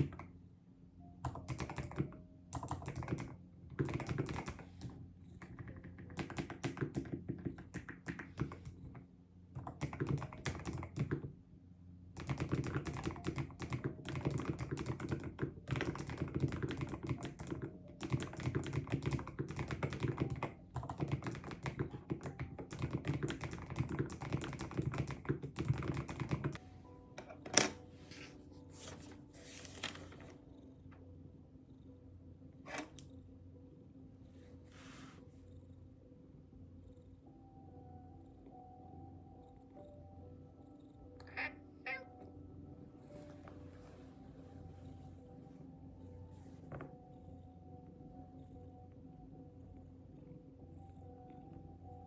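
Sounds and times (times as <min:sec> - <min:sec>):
keyboard typing: 0:00.0 - 0:00.3, 0:01.2 - 0:11.4, 0:12.2 - 0:30.5.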